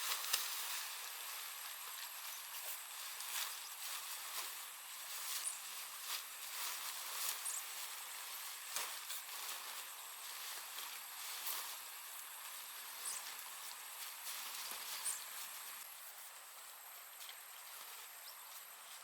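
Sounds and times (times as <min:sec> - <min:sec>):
rustling with light knocks: 0:00.0 - 0:19.0.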